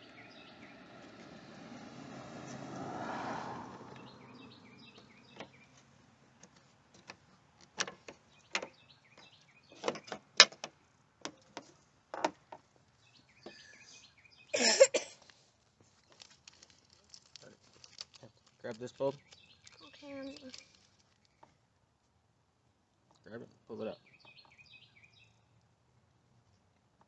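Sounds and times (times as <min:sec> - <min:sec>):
vehicle passing: 0:00.0 - 0:06.4
birds chirping: 0:00.0 - 0:10.4, 0:12.9 - 0:15.0, 0:18.7 - 0:21.6, 0:23.2 - 0:25.6
parts clicking and knocking: 0:06.4 - 0:12.7.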